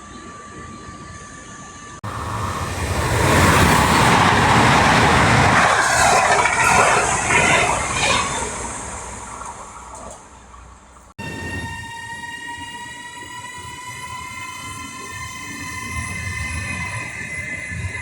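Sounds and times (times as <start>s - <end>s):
train passing: 0.3s - 18.0s
rising whine: 2.0s - 14.2s.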